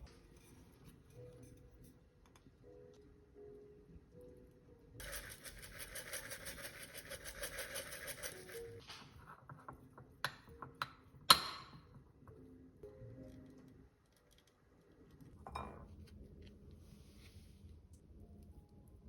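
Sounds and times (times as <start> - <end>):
soft background music: 0.0 - 19.0
rapid rhythmic scraping: 5.0 - 8.8.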